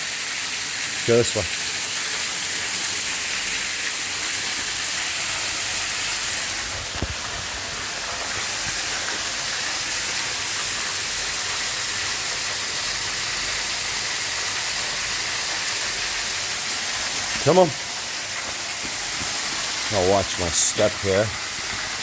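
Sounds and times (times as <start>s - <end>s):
waterfall rushing: 14.3s - 22.0s.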